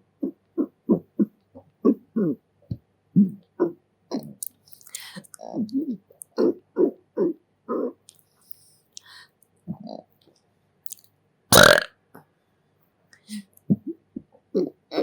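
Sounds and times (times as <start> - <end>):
person burping: 11.6 - 11.9.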